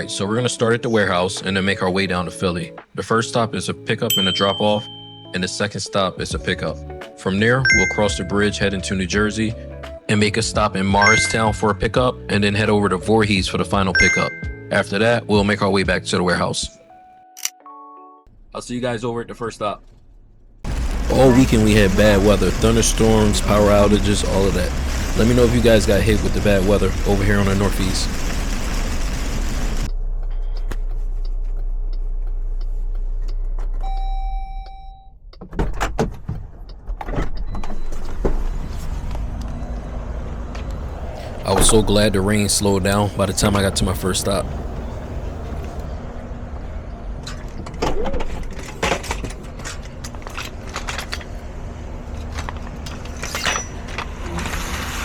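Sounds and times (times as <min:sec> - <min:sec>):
electronic chime: 0:04.1 - 0:05.4, 0:07.7 - 0:08.3, 0:11.0 - 0:11.7, 0:14.0 - 0:14.7
steady low hum: 0:20.7 - 0:30.4
clunks and rattles: 0:35.4 - 0:39.4, 0:47.2 - 0:51.4.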